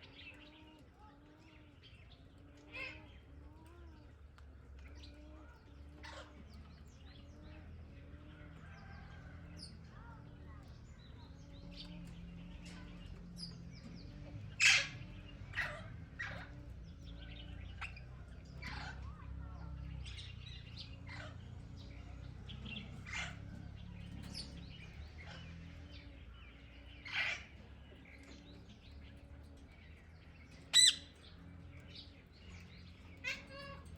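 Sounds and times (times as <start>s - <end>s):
parakeets squawking: 6.0s - 6.4s, 14.5s - 22.0s, 22.6s - 28.8s, 30.4s - 33.9s
bird chirps: 10.0s - 33.9s.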